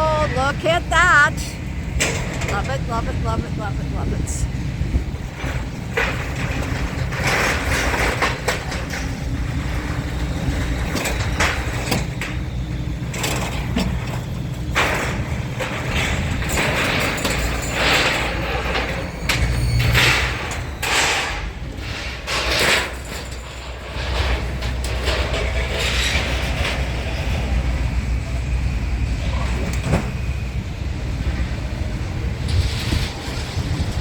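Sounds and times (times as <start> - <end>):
scrap metal crashing and clattering: 5.4 - 12.4, 13.1 - 27.5.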